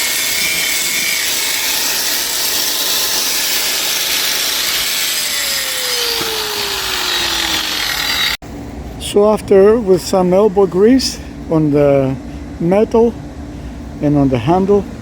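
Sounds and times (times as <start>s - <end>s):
grinder grinding metal: 0.0s - 8.4s
grinder motor whine: 0.0s - 8.4s.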